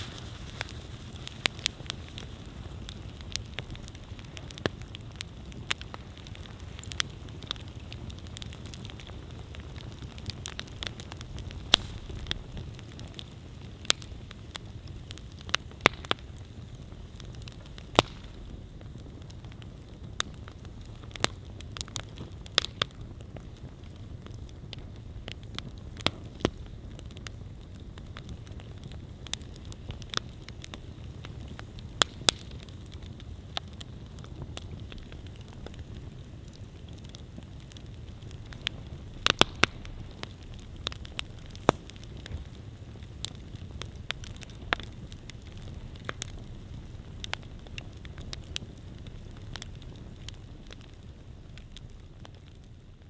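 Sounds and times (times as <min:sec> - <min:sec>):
burning wood crackling and popping: 0:00.0 - 0:53.0
campfire flame rushing: 0:00.0 - 0:53.0.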